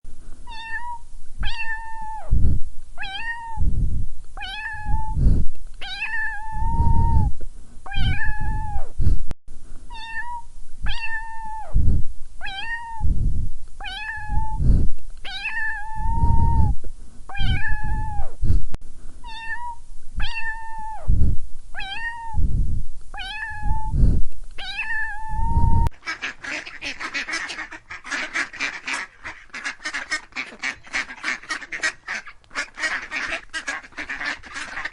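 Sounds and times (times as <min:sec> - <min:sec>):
kitten meowing: 0:00.5 - 0:02.3, 0:03.0 - 0:03.6, 0:04.4 - 0:05.2, 0:05.8 - 0:07.3, 0:07.9 - 0:08.9, 0:09.9 - 0:11.8, 0:12.4 - 0:13.1, 0:13.8 - 0:14.6, 0:15.2 - 0:18.3, 0:19.2 - 0:21.1, 0:21.8 - 0:22.4, 0:23.2 - 0:24.0, 0:24.6 - 0:25.9
rapid chatter of animal calls: 0:26.0 - 0:34.9.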